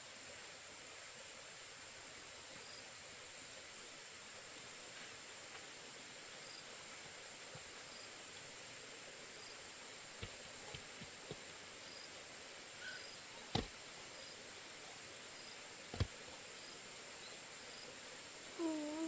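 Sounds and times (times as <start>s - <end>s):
high insect drone: 0.0s - 19.0s
light knocks: 13.5s - 13.7s.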